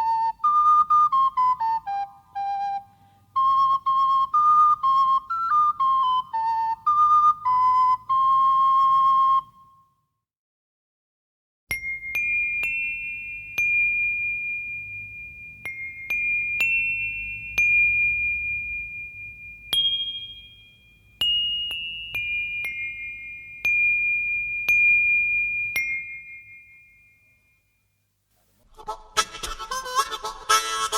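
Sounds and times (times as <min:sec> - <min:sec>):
whistle-like note: 0:00.0 - 0:10.0
bell-like metal percussion melody: 0:11.7 - 0:27.8.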